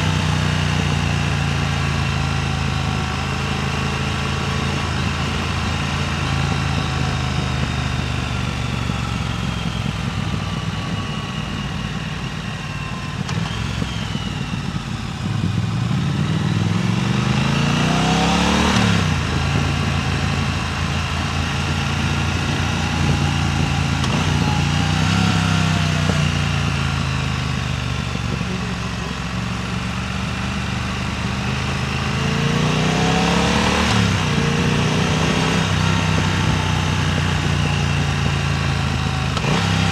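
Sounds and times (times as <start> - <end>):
motorcycle engine accelerating: 0.0 - 39.9
wind on microphone: 18.9 - 26.7.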